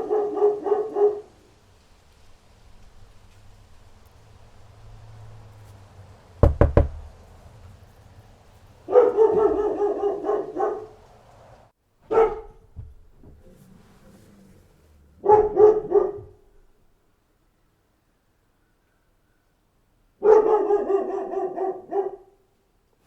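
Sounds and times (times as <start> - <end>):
dog barking: 0.0 - 1.5, 8.9 - 11.0, 12.1 - 12.7, 15.2 - 16.5, 20.2 - 22.5
sharp knocks: 6.4 - 7.1.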